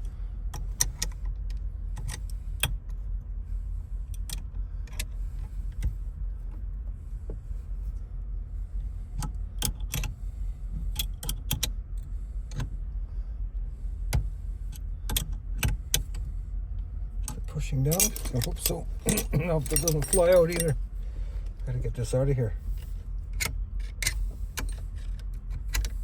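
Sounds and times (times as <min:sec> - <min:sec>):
steady low rumble: 0:00.0 - 0:26.0
metallic clicks of hand tools: 0:17.9 - 0:20.8.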